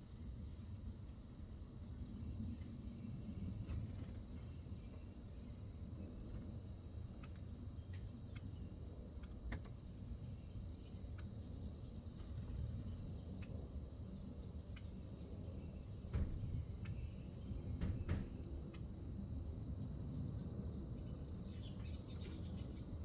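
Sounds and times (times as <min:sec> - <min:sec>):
insects trilling: 0:00.0 - 0:23.0
loud knocks: 0:17.8 - 0:18.4.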